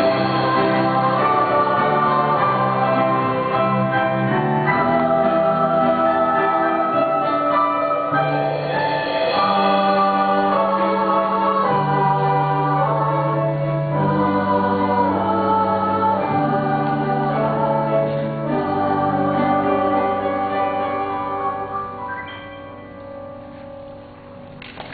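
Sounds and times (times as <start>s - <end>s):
slow music of sustained chords: 0.0s - 24.9s.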